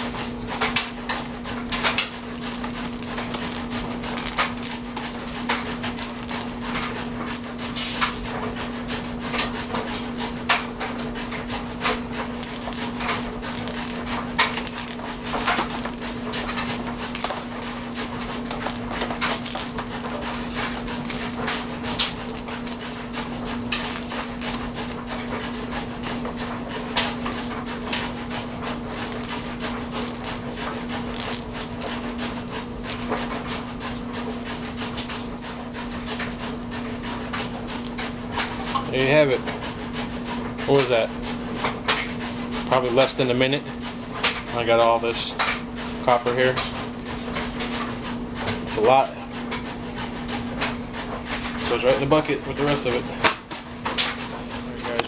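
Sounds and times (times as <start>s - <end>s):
wire stripper crackling and ticking: 0.0s - 39.4s.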